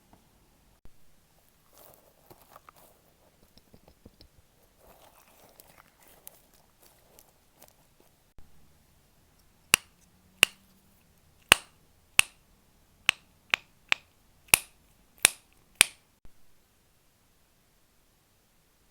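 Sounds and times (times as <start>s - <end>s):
fidget toy clicking: 13.1s - 16.0s.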